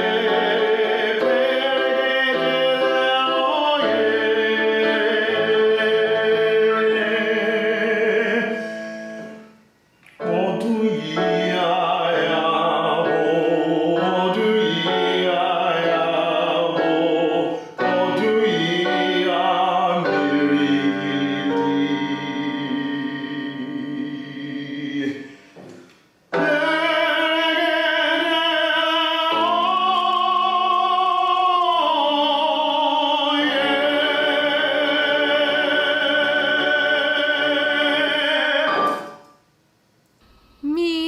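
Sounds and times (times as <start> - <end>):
singing with accompaniment: 0.0 - 39.4
wavering held vocal notes: 10.2 - 25.5, 40.3 - 41.0.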